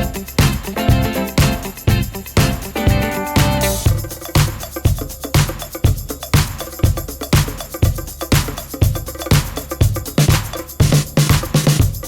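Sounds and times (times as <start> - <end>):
upbeat background music: 0.0 - 4.0.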